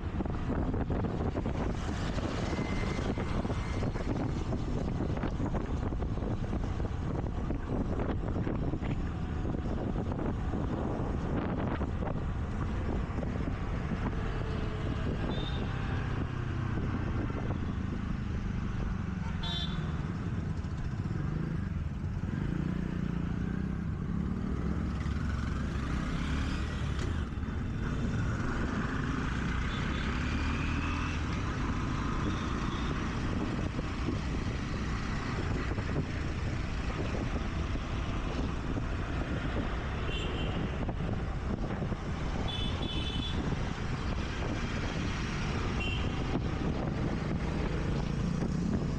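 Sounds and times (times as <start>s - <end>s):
passing vehicles: 0.0s - 48.9s
scooter engine and road rumble: 0.0s - 48.9s
horn toot: 42.4s - 43.4s.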